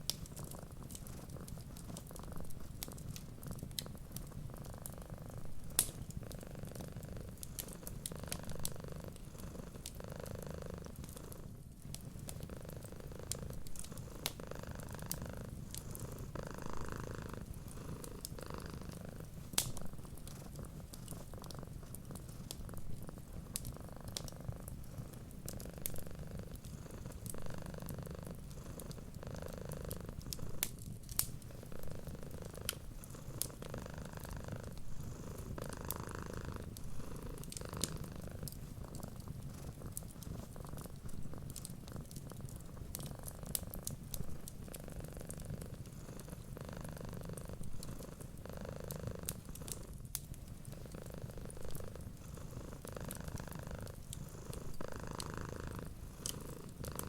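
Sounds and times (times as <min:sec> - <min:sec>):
cat purring: 0:00.0 - 0:57.0
wood fire crackling and popping: 0:00.0 - 0:57.0.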